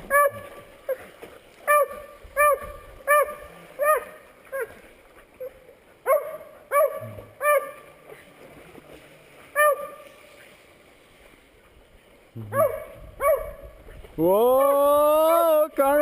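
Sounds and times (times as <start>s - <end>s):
dog barking in yelps: 1.7s - 4.7s, 6.1s - 7.8s, 9.6s - 10.0s, 12.5s - 13.6s.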